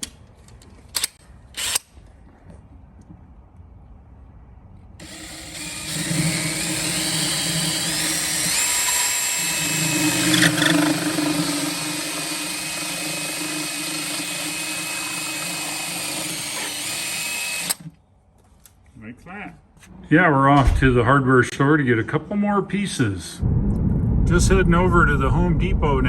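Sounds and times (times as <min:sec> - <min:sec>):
power drill whining: 0:01.6 - 0:01.8, 0:05.0 - 0:17.9.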